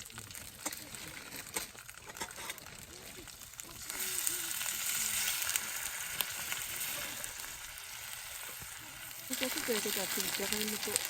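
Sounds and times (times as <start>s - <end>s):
food sizzling in a pan: 0.0s - 11.0s.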